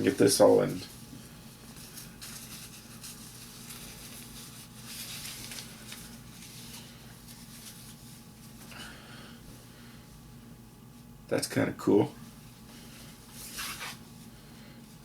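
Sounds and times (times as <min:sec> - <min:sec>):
steady low hum: 0:00.0 - 0:15.0
flag rustling: 0:00.1 - 0:08.7, 0:12.3 - 0:14.1.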